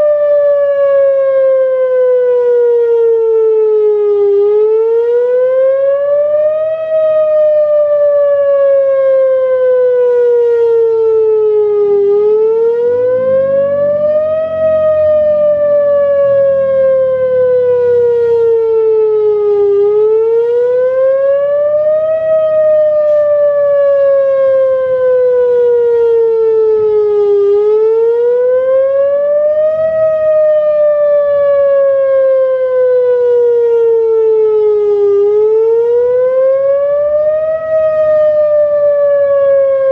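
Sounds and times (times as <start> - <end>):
warning siren wailing: 0.0 - 39.9.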